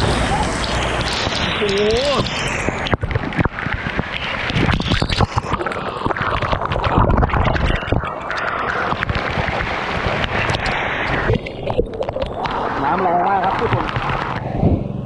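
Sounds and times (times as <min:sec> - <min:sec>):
low rumbles: 0:00.0 - 0:05.0, 0:09.4 - 0:15.0
waterfall rushing and splashing: 0:00.0 - 0:14.4.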